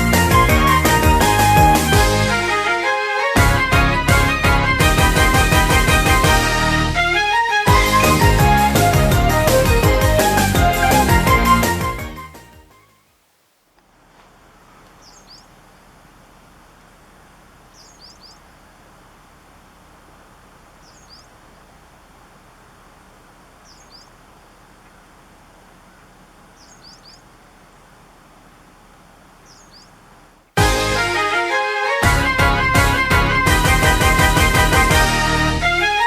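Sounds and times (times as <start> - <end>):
outdoor background hiss: 0.0 - 36.0
bird chirping: 14.5 - 15.6, 17.7 - 18.6, 20.8 - 21.8, 23.6 - 25.1, 26.0 - 27.4, 29.4 - 30.0.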